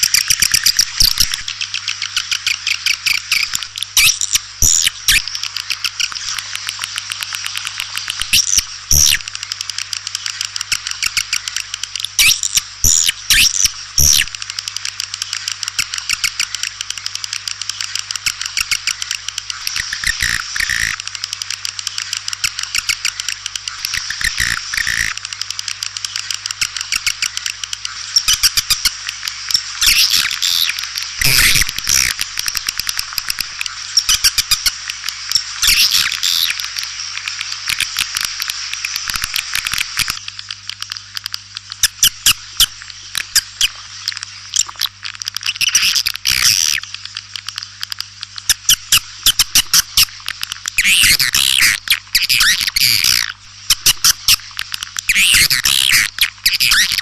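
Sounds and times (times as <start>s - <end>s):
swiftlets twittering: 15.4s - 36.6s, 50.8s - 57.0s.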